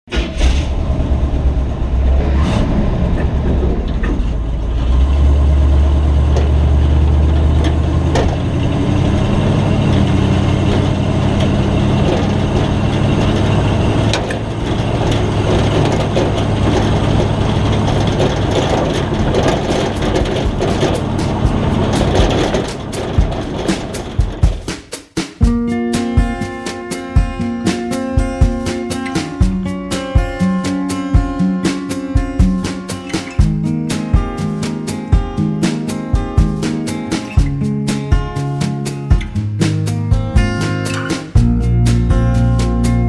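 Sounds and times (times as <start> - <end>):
pickup engine idling: 0.3 - 2.2, 2.8 - 24.6.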